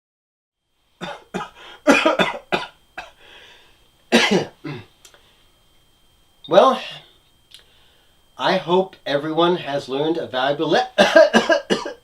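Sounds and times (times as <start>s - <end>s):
person coughing: 1.0s - 3.2s, 4.1s - 4.9s, 11.0s - 12.0s.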